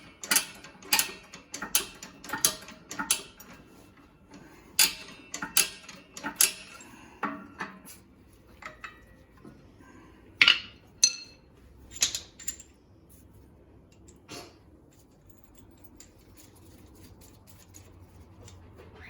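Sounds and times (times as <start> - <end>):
metal tools clinking: 0.0 - 9.4, 10.4 - 12.8, 13.9 - 18.7.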